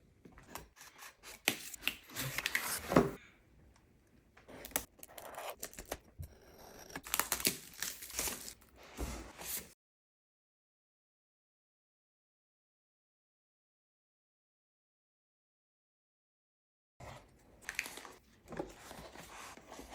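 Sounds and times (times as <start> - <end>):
packaging tearing and crinkling: 7.0 - 8.6.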